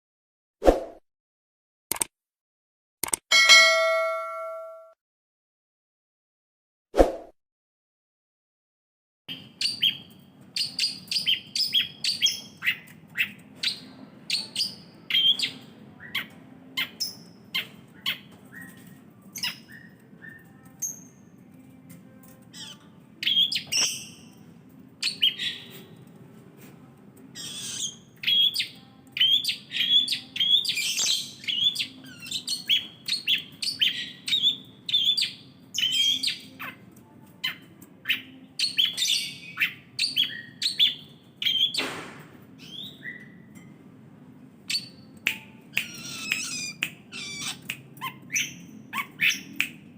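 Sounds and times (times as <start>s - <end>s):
bird chattering song: 9.3s - 21.2s, 27.4s - 36.8s, 37.4s - 41.8s, 44.7s - 49.9s.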